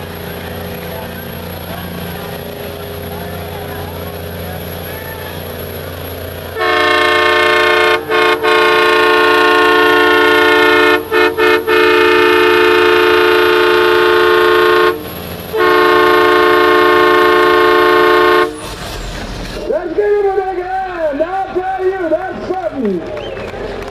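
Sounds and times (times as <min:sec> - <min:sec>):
multi-tone air horn blasts: 0:06.6 - 0:18.8.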